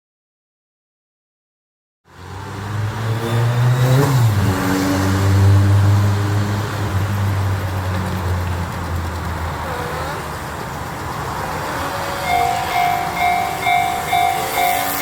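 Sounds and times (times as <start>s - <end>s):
vehicle engine running: 5.2s - 14.8s.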